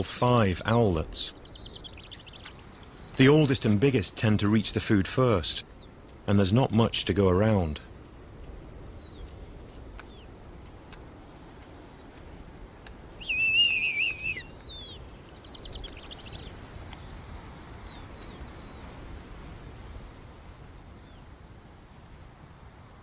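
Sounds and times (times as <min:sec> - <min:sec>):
wavering bird calls: 0:00.0 - 0:06.0, 0:08.4 - 0:10.3, 0:11.2 - 0:12.2, 0:13.1 - 0:19.0
faint wind: 0:00.0 - 0:23.0
high whistled bird calls: 0:01.0 - 0:03.5, 0:11.2 - 0:12.1, 0:13.2 - 0:18.9
bird trill: 0:13.2 - 0:18.9.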